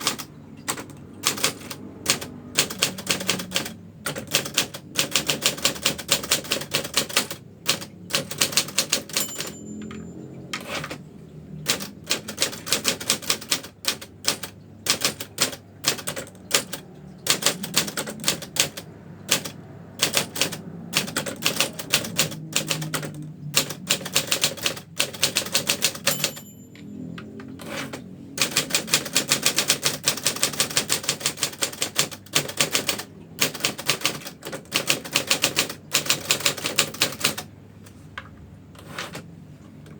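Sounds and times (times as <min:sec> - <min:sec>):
manual typewriter typing: 0:00.0 - 0:37.5, 0:38.8 - 0:39.3
typewriter bell ringing: 0:08.1 - 0:11.0, 0:24.2 - 0:27.9.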